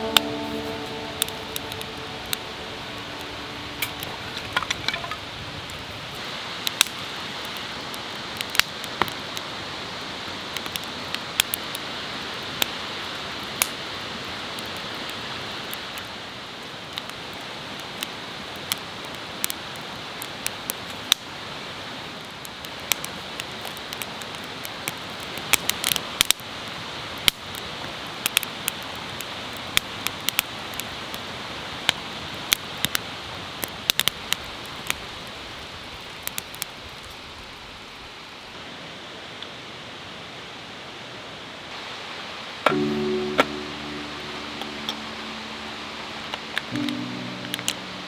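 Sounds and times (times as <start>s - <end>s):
wood fire crackling: 0.0s - 37.6s, 42.7s - 48.0s.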